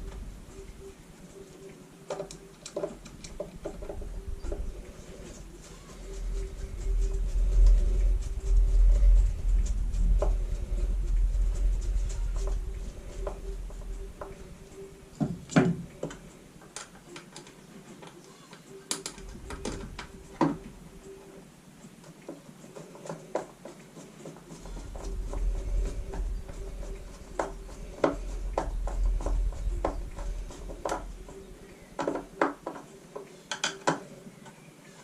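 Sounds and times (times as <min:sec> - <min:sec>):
faint steady hum: 0:00.0 - 0:35.0
low rumble: 0:03.9 - 0:16.0, 0:19.2 - 0:21.0, 0:24.6 - 0:32.4
tools and plastic parts clicking: 0:15.5 - 0:20.6, 0:32.0 - 0:35.0.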